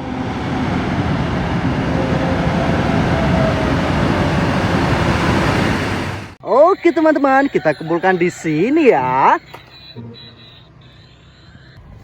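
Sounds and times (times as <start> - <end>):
heavy vehicle rumbling: 7.4 - 12.0.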